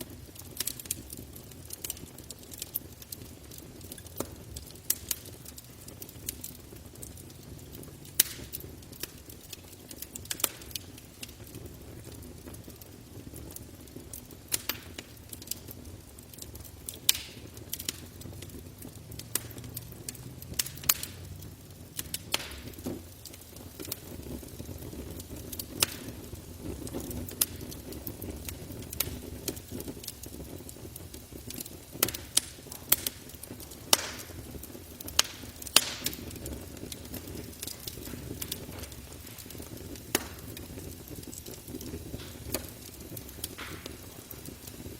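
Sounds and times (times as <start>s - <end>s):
campfire pops and snaps: 0.0s - 44.9s
low rumble of flames: 0.0s - 44.9s.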